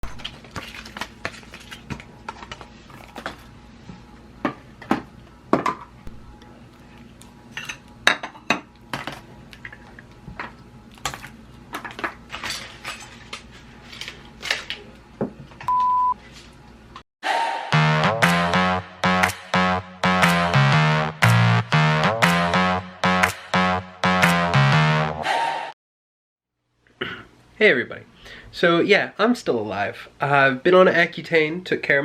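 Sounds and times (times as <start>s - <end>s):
short beep: 15.7s - 16.2s.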